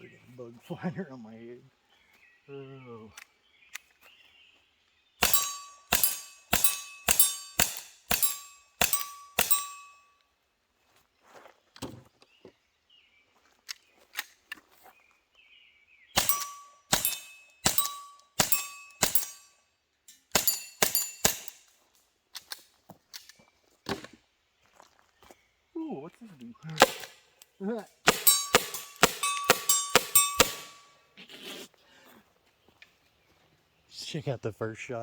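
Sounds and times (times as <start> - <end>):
pistol shots with metallic ring: 5.2 - 10.0, 16.2 - 19.5, 20.2 - 21.6, 26.8 - 27.3, 28.1 - 30.9.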